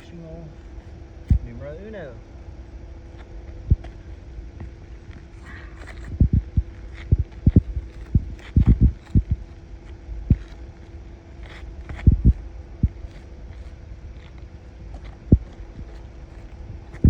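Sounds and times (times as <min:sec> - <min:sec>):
faint steady hum: 0:00.0 - 0:17.0
dull thumps: 0:03.7 - 0:04.0, 0:11.9 - 0:13.1.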